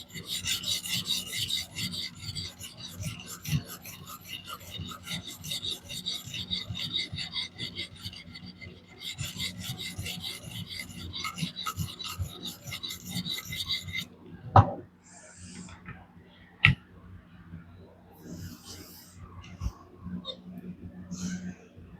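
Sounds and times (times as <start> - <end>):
sharpening plate scraping knife: 0.0 - 14.1.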